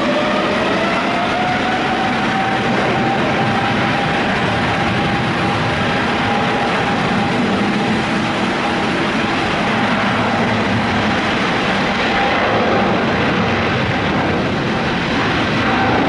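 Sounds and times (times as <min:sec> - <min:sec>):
jet engines roaring: 0:00.0 - 0:16.0.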